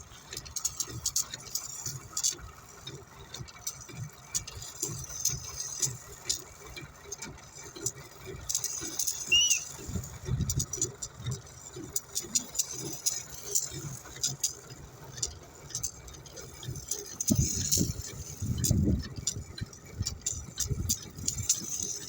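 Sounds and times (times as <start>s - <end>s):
high squeak: 9.3s - 9.7s.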